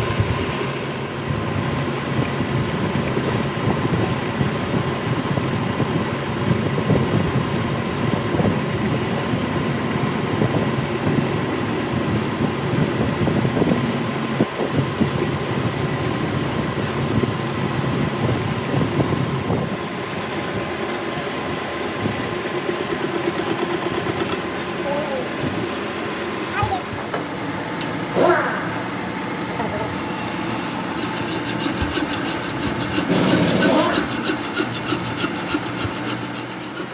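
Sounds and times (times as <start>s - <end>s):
workshop machine humming: 0.0s - 36.9s.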